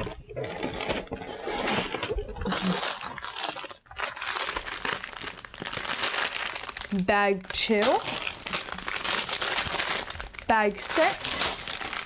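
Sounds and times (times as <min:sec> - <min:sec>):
plastic bags crinkling: 0:01.6 - 0:12.0.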